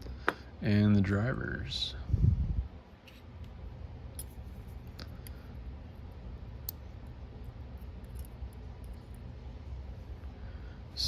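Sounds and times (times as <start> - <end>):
steady low hum: 0.0 - 11.0
small metal lock parts clicking: 7.8 - 9.2.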